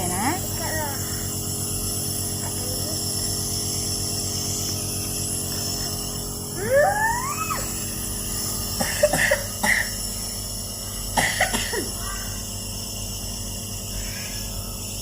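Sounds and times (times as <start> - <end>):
nebulizer compressor humming: 0.0 - 15.0
child coughing: 8.7 - 10.1, 11.1 - 12.4.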